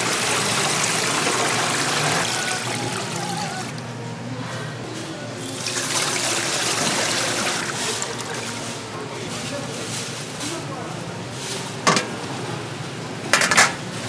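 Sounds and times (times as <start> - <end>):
water running and splashing: 5.5 - 8.8.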